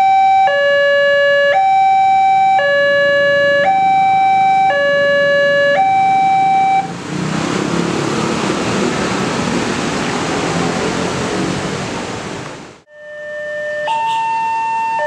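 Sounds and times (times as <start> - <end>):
two-tone crossing siren: 0.0 - 7.0, 12.9 - 15.0.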